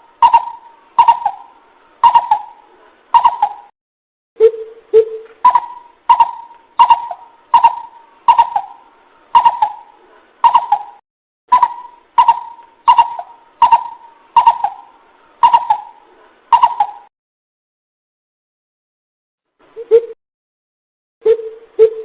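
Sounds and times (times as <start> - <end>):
bird hooting call with clicks: 0.2 - 2.6, 3.2 - 3.7, 4.4 - 8.8, 9.4 - 17.1, 21.2 - 22.0.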